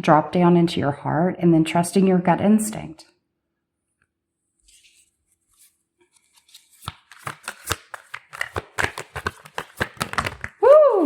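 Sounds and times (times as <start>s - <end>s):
cards being shuffled: 4.6s - 11.0s.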